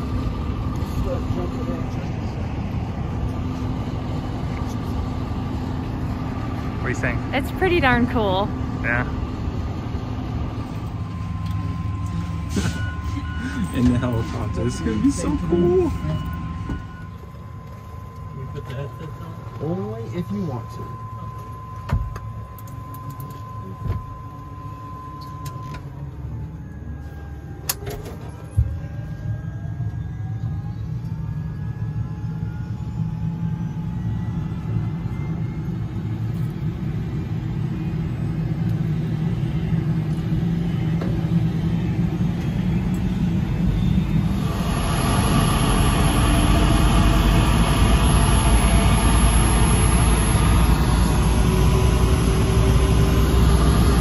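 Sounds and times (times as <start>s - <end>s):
helicopter turbine starting up: 0.0s - 54.0s
rotor noise: 38.4s - 54.0s.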